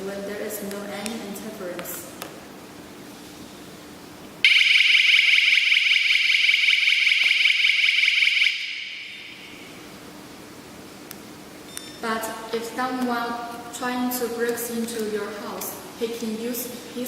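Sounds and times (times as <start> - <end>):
shrill fluttering alarm siren: 4.4 - 9.7.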